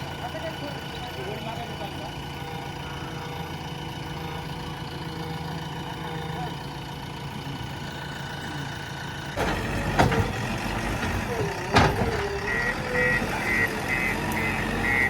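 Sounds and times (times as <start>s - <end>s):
diesel engine idling: 0.0s - 15.0s.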